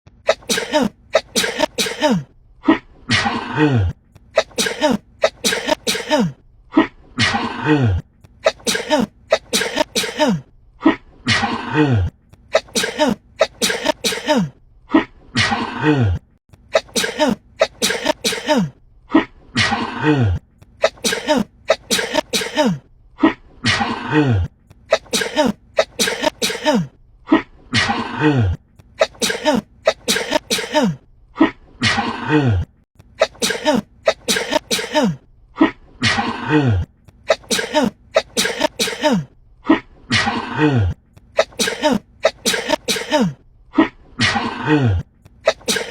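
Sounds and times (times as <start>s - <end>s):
woman sneezing: 0.3s - 2.3s, 4.4s - 6.4s, 8.4s - 10.5s, 12.5s - 14.6s, 16.7s - 18.8s, 20.8s - 22.8s, 24.9s - 26.9s, 29.0s - 31.0s, 33.2s - 35.2s, 37.3s - 39.3s, 41.4s - 43.4s, 45.4s - 45.9s.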